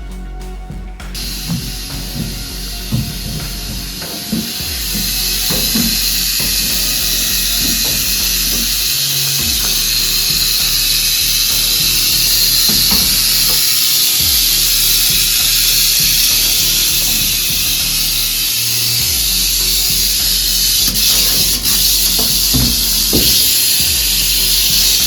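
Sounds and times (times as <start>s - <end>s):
rattlesnake rattling: 1.0s - 25.0s.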